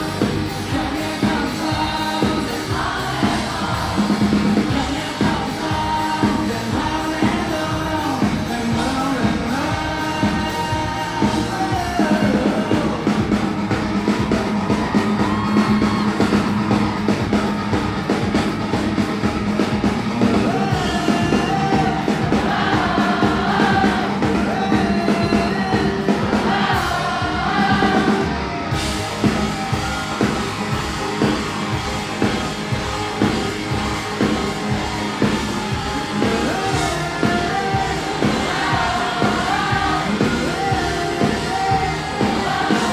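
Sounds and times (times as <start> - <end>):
person singing lead vocal: 0.0 - 13.7, 20.2 - 28.8, 33.2 - 42.9
live rock band playing: 0.0 - 42.9
steady drum beat: 0.0 - 42.9.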